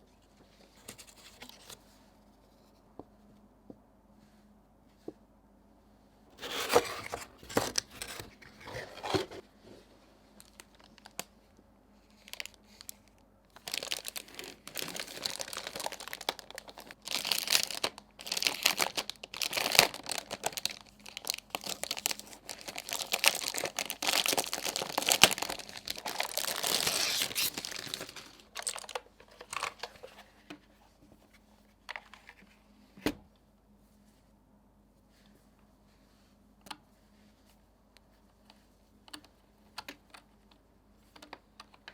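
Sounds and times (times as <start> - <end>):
packaging crinkling and tearing: 6.4 - 9.4, 12.1 - 30.1
continuous rustling of wrapping: 6.4 - 11.3, 12.0 - 30.9.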